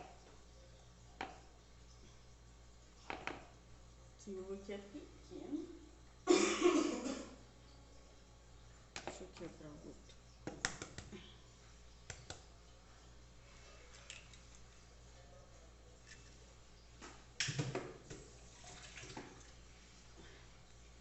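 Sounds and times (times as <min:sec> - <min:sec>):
egg tapping against a bowl: 0:10.4 - 0:11.1, 0:12.0 - 0:12.5
liquid splashing: 0:18.3 - 0:19.6.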